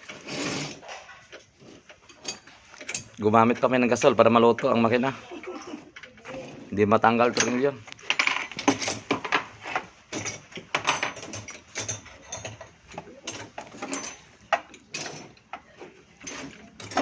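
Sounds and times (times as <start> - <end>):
hand tools on metal: 0.0 - 17.0.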